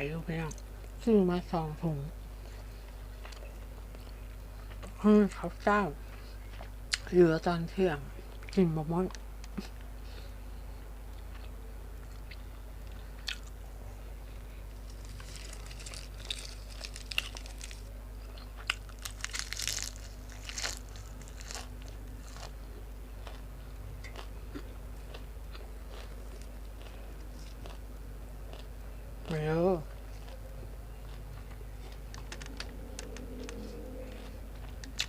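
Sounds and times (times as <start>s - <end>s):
person chewing crunchy food: 2.4s - 5.0s, 11.1s - 13.6s, 14.3s - 29.4s, 30.0s - 35.0s.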